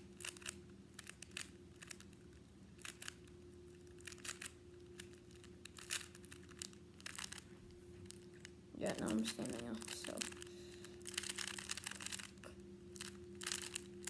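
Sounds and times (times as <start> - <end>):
puzzle cube plastic clicks: 0.1 - 2.2, 2.8 - 3.2, 3.9 - 7.4, 8.1 - 14.0.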